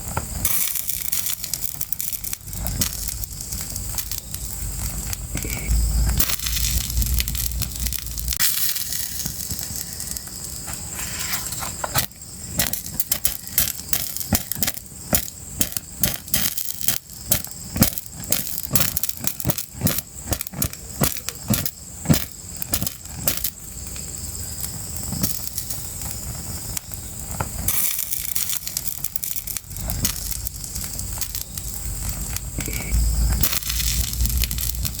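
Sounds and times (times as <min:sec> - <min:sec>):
fire crackling and popping: 0:00.0 - 0:35.0
low rumble: 0:02.3 - 0:08.4, 0:31.8 - 0:35.0.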